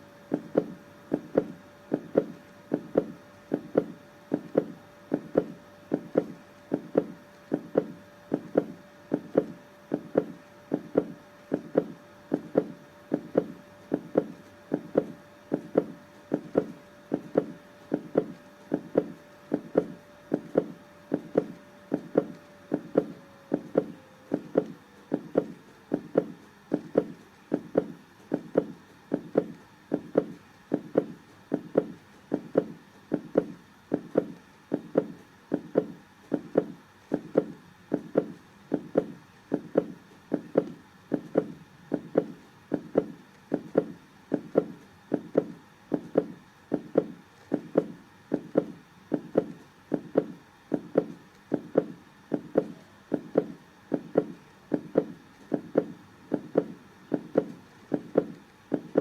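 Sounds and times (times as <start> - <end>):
heartbeat double thump: 0.3 - 59.0.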